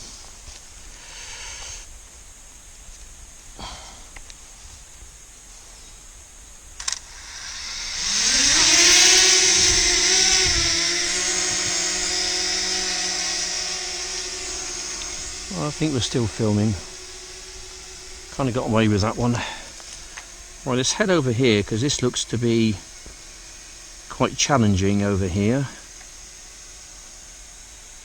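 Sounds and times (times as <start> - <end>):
drone propellers humming: 0.0 - 2.7, 5.7 - 28.0.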